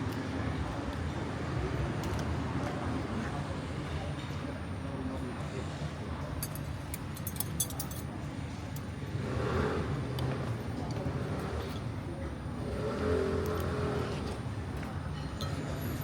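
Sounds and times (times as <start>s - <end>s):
light clinks: 6.3s - 8.2s, 15.1s - 16.0s
vehicles passing: 9.0s - 16.0s.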